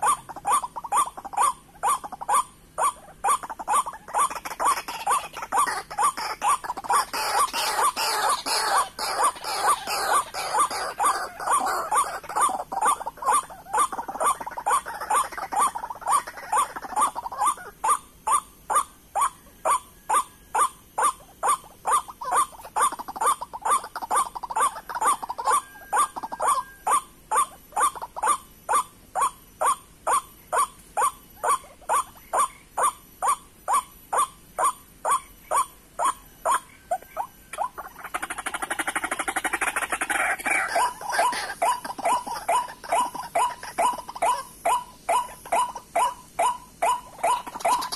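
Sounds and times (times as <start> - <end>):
waterhens calling: 0.0 - 17.9, 21.4 - 28.4, 36.0 - 47.9.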